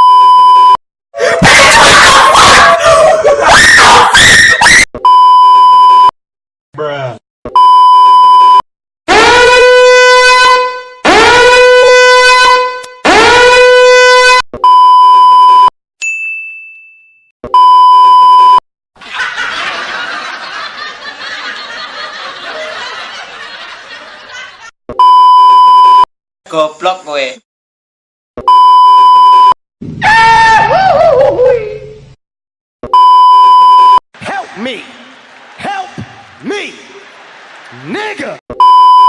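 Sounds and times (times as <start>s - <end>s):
censor bleeps: 0.0s - 0.8s, 7.6s - 8.6s, 14.6s - 15.7s, 17.6s - 18.6s, 25.0s - 26.1s, 28.4s - 29.6s, 32.8s - 34.0s, 38.5s - 39.0s
air horn blasts: 9.1s - 14.4s
ringing ding: 16.0s - 17.3s.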